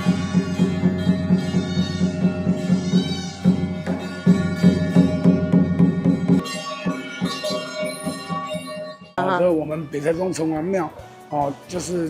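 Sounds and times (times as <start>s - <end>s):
drum beat: 0.0s - 9.4s.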